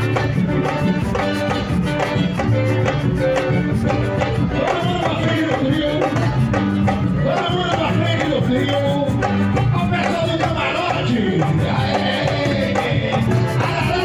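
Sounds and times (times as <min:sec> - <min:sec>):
hand percussion: 0:00.0 - 0:14.0
person singing: 0:03.3 - 0:14.0.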